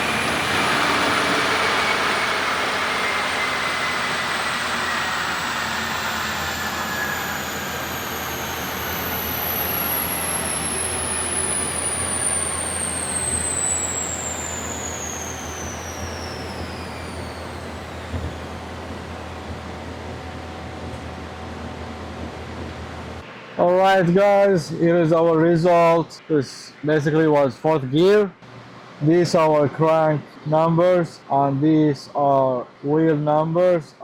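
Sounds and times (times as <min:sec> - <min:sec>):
car and dyno rollers whining down: 0:00.0 - 0:25.0.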